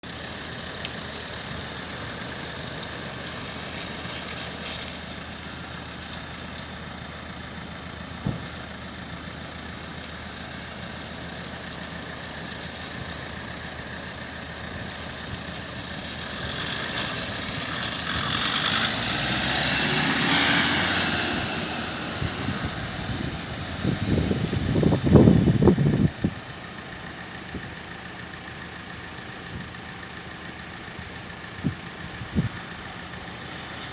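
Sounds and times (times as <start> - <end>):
engine idling: 0.0 - 33.9
heavy uneven rumble: 21.4 - 33.9.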